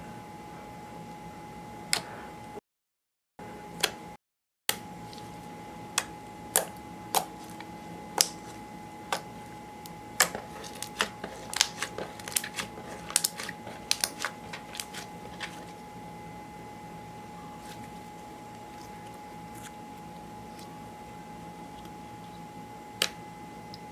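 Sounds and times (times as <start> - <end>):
sticky slime clicks and pops: 6.0 - 7.3, 8.2 - 8.4.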